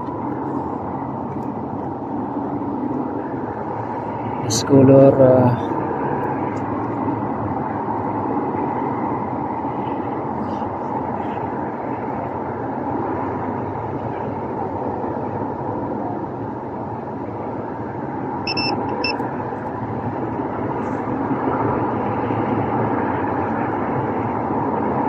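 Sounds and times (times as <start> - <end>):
steady hum: 18.1 - 21.4
continuity tester beeping: 18.4 - 19.2.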